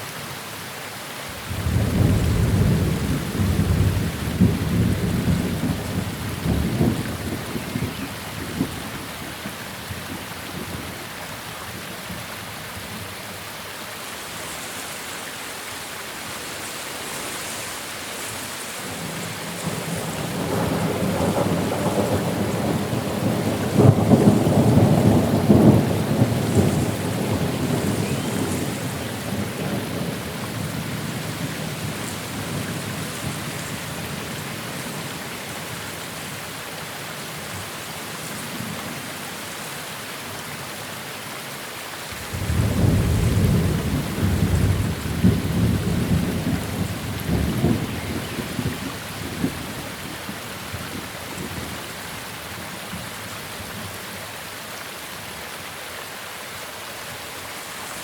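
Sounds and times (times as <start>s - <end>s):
steady rain: 0.0s - 58.0s
thunder rumbling: 1.4s - 9.0s, 18.9s - 34.3s, 42.3s - 51.7s.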